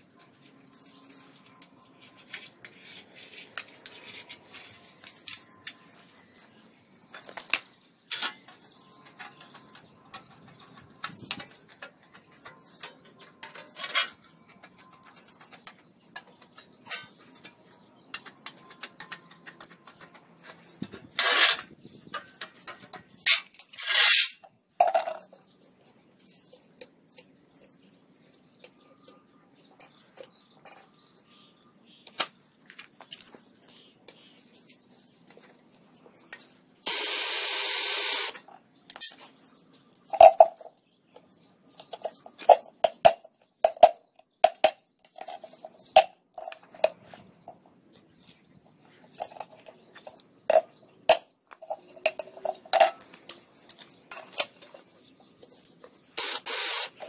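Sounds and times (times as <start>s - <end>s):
objects clinking and clattering: 6.3s - 25.4s.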